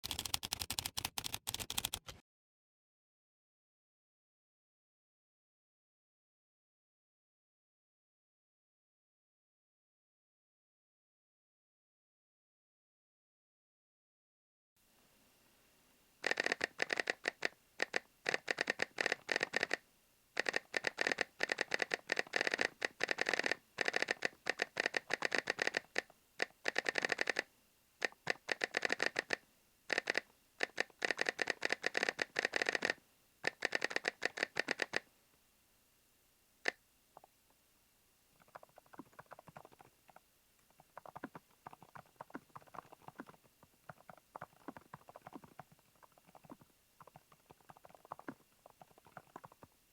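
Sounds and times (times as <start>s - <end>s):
keyboard typing clicks: 0.0s - 2.2s, 16.2s - 19.8s, 20.4s - 35.0s, 38.4s - 49.7s.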